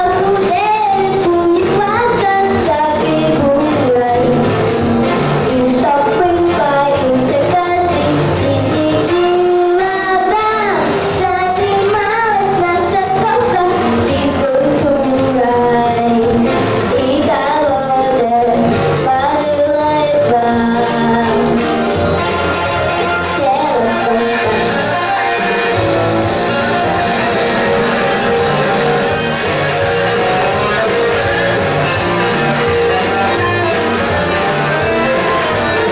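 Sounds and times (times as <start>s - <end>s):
girl singing: 0.0s - 4.5s, 5.4s - 21.6s, 23.3s - 24.9s
pop backing track with beat: 0.0s - 35.9s.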